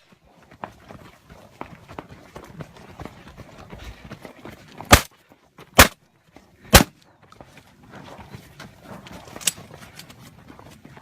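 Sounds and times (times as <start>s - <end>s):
shotgun shots: 4.9s - 5.1s, 5.8s - 6.0s, 6.7s - 6.9s.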